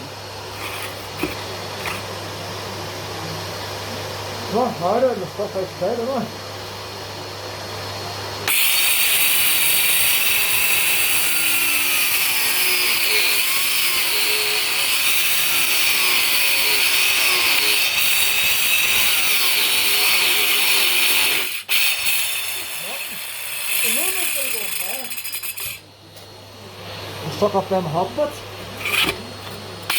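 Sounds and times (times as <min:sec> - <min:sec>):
stone-cutting saw cutting stone: 0:00.0 - 0:02.2, 0:08.4 - 0:25.9, 0:27.3 - 0:29.9.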